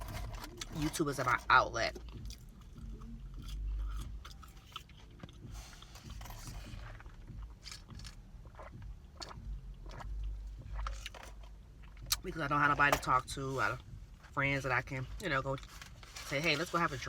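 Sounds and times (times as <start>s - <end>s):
person chewing food: 2.0s - 12.2s.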